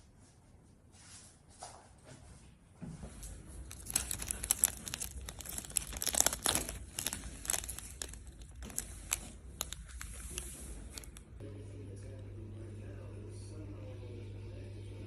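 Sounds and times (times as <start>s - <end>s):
crinkly material crumpling: 3.2s - 11.4s.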